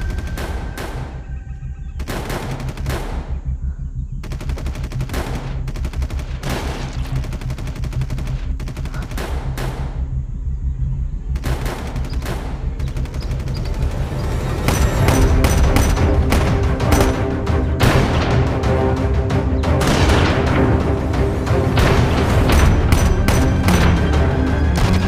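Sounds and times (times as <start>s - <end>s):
steady low rumble: 0.0s - 19.1s
rapid automatic gunfire: 2.0s - 3.3s, 4.2s - 10.0s, 11.4s - 14.0s, 14.7s - 17.3s.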